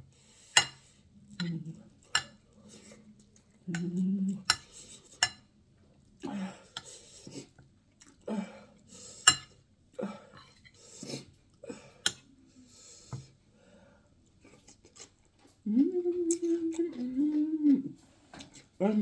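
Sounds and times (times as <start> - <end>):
sharp mouth clicks: 16.2 - 16.8.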